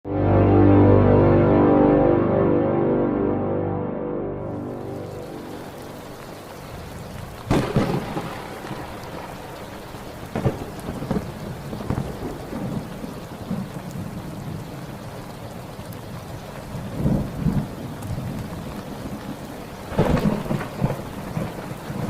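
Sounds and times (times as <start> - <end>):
steady rain: 4.4 - 22.0
rolling thunder rumble: 4.5 - 22.0
thunderclaps: 4.9 - 22.0.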